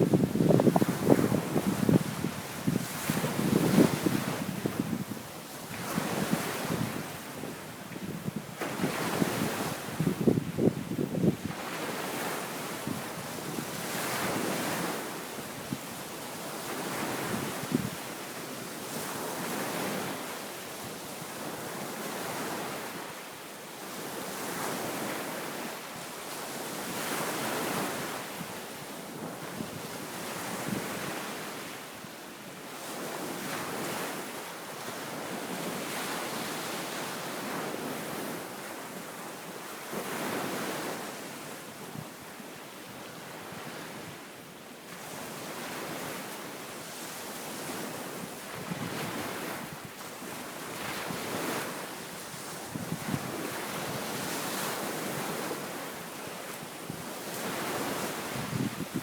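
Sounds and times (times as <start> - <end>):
wind buffeting microphone: 0.0 - 5.1
waves breaking on sandy beach: 0.0 - 59.0.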